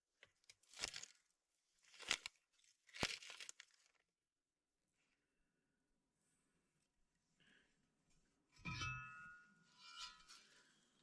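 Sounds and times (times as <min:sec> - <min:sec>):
kindling tearing and crumpling: 0:00.3 - 0:04.0.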